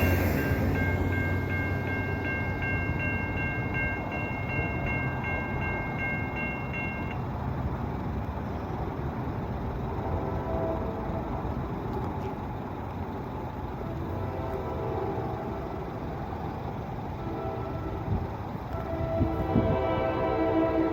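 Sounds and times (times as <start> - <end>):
electronic crossing bell ringing: 0.0 - 7.2
train passing: 0.0 - 20.9.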